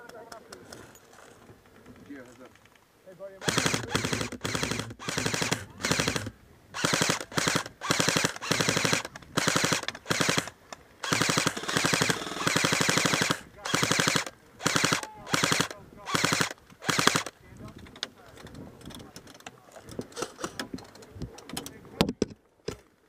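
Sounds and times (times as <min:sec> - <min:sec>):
airsoft guns firing bursts: 0:03.4 - 0:17.4.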